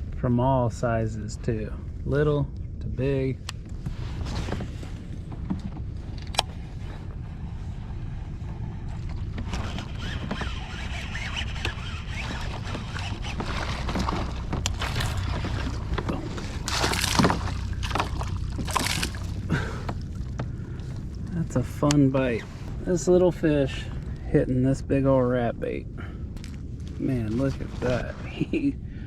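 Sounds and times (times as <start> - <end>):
wind rumble on microphone: 0.0 - 29.0
water splashing and sloshing: 3.5 - 24.4, 26.2 - 28.5
fish thrashing at surface: 9.5 - 20.4.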